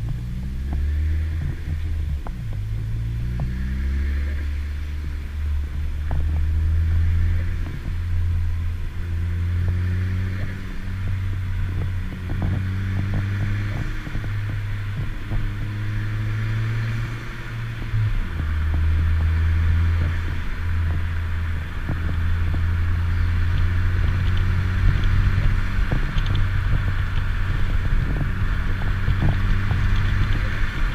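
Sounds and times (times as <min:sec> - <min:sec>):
car engine running: 0:00.0 - 0:30.9.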